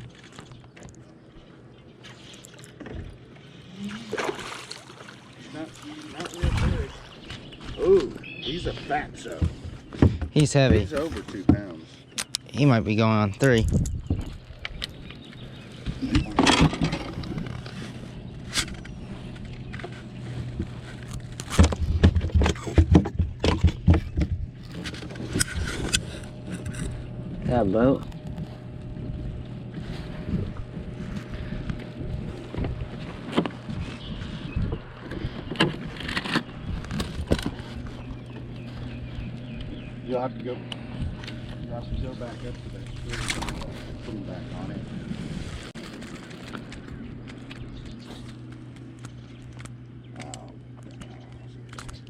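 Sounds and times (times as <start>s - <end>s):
water splashing beside boat: 0.0s - 12.1s
steady low hum: 0.0s - 52.0s
knocks clicks and scrapes: 15.8s - 27.0s.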